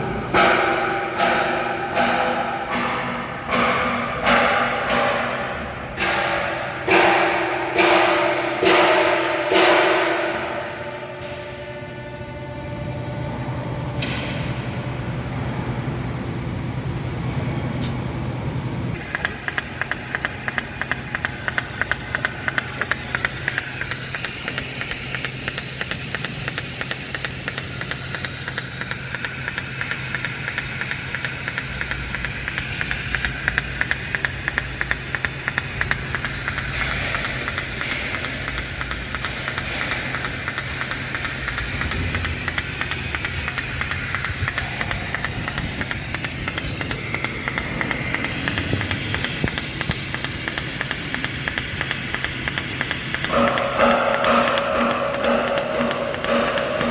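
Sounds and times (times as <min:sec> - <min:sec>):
welding arc hissing and crackling: 0:00.0 - 0:10.6, 0:18.9 - 0:56.9
low machine hum: 0:00.0 - 0:56.9
welding arc ticks: 0:19.0 - 0:56.9.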